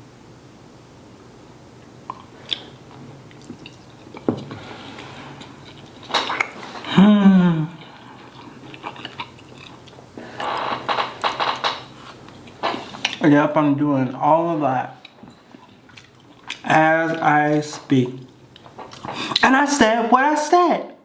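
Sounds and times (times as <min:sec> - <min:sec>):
person chewing: 0:01.9 - 0:13.2, 0:15.0 - 0:17.3, 0:18.2 - 0:19.4
person humming: 0:06.8 - 0:08.0.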